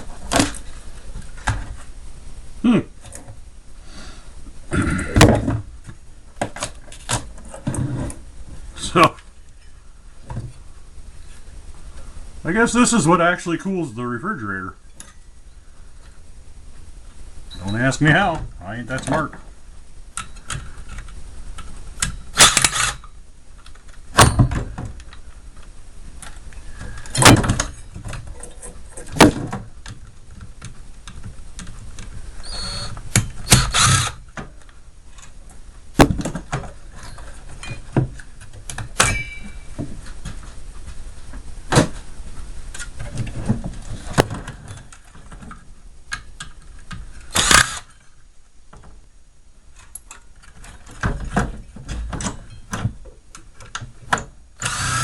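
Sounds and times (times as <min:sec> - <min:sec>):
metal parts knocking and scraping: 0:23.7 - 0:25.2, 0:36.0 - 0:40.4, 0:49.8 - 0:53.8
sharp impacts: 0:38.8 - 0:40.4.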